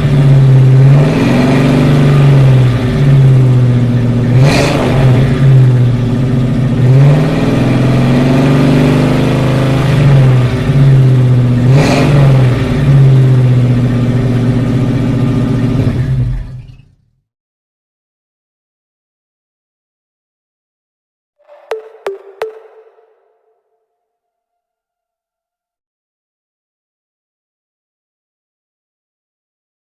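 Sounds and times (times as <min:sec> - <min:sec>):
car engine revving: 0:00.0 - 0:16.5.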